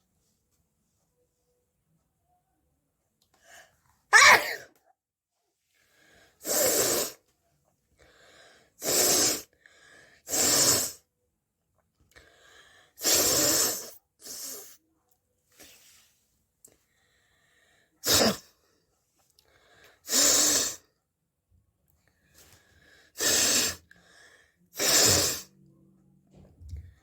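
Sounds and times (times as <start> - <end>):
faint breaths: 5.7 - 7.3, 7.9 - 10.6, 12.1 - 14.8, 15.5 - 20.1, 22.0 - 25.6
person blowing nose forcefully: 6.4 - 7.2, 8.8 - 9.5, 10.3 - 11.0, 13.0 - 14.7, 18.0 - 18.4, 20.0 - 20.8, 23.2 - 23.8, 24.8 - 25.5.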